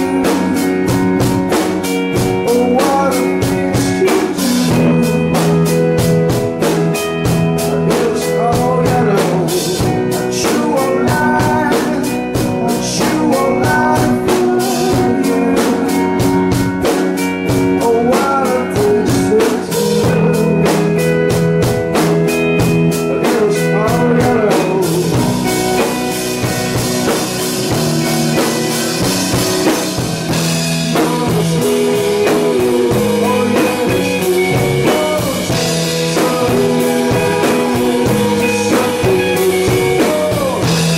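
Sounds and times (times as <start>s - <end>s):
bass guitar: 0.0s - 40.9s
drum kit beat: 0.0s - 40.9s
electric guitar: 0.0s - 40.9s.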